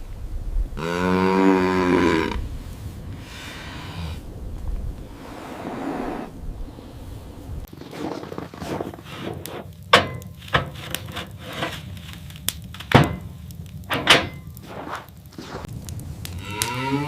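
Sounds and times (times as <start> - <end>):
rubbing sounds: 7.7 - 12.9, 13.9 - 15.7.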